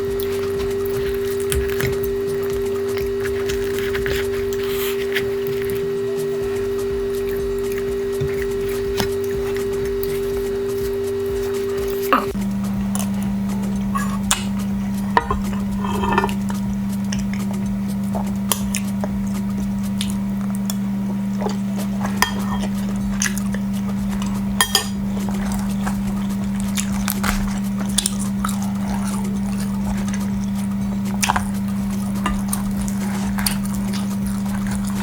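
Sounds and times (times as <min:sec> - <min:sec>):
steady low drone: 0:00.0 - 0:35.0
cutlery clinking against dishes: 0:14.0 - 0:17.5, 0:21.4 - 0:23.6, 0:24.2 - 0:35.0.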